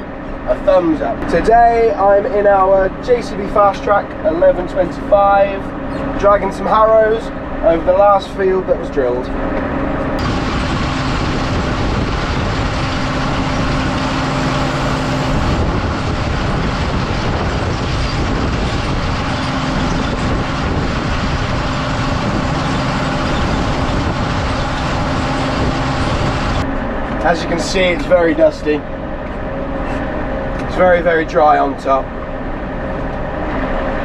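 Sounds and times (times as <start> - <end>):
tractor engine under load: 10.2 - 28.1.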